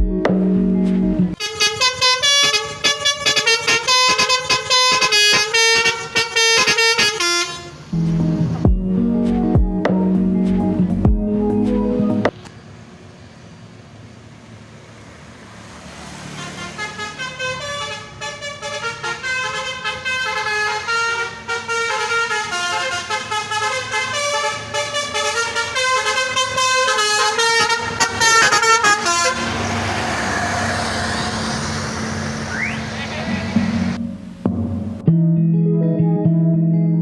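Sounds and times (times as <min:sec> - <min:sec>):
vehicle rumble: 0:00.0 - 0:35.1
multi-tone bus horn tune: 0:01.3 - 0:08.5, 0:16.2 - 0:34.1.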